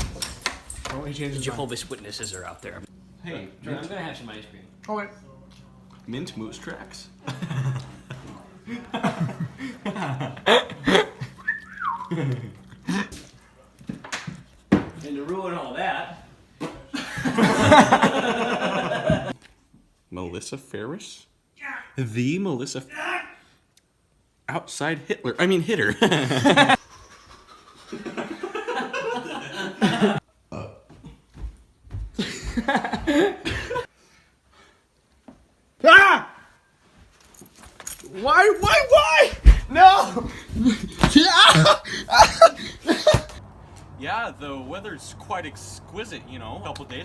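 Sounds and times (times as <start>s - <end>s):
high falling whistle: 11.4s - 12.2s
person belching: 30.5s - 30.9s.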